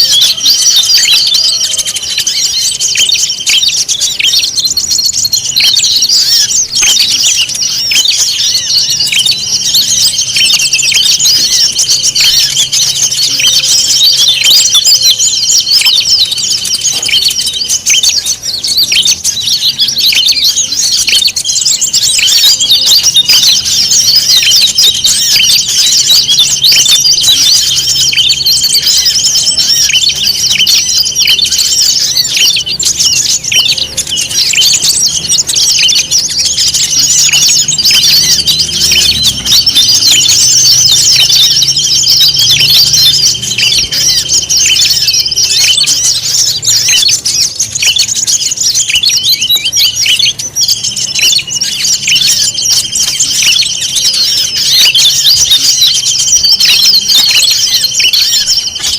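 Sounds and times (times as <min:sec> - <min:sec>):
songbirds chirping: 0:00.0 - 0:58.9
steady high trill: 0:25.2 - 0:47.2.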